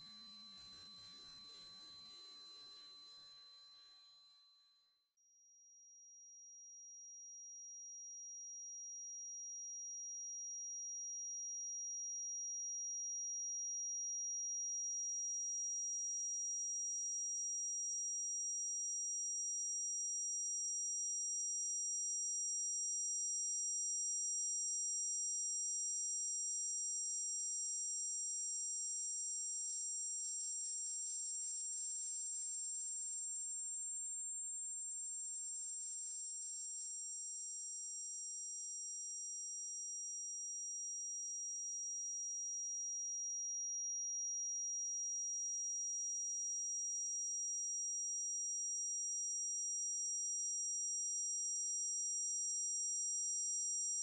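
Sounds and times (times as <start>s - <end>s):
second higher tone: 0.0s - 4.9s
high-pitched pure tone: 0.0s - 5.0s.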